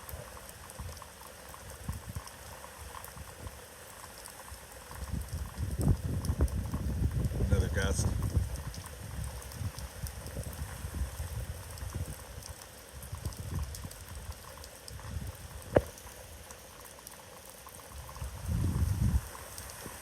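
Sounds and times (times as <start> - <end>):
rain hiss: 0.0 - 20.0
wind buffeting microphone: 4.9 - 15.9, 17.9 - 20.0.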